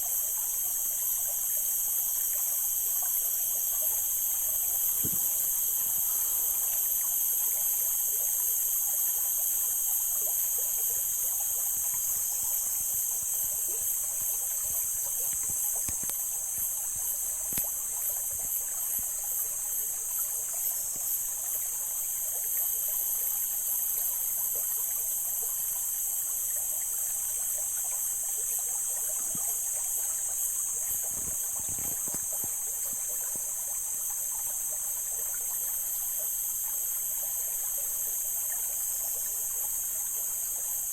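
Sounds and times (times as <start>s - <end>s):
stream water flowing and trickling: 0.0s - 40.9s.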